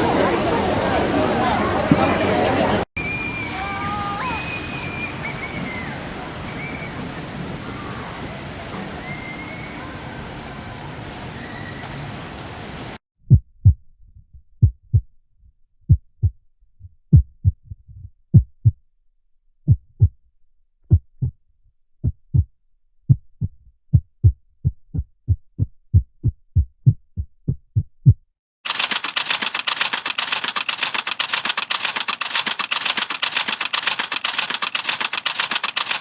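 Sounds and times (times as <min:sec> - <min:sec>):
heartbeat thumps: 0:13.3 - 0:15.1, 0:15.9 - 0:18.8, 0:19.7 - 0:20.2, 0:20.9 - 0:21.4, 0:22.0 - 0:28.3.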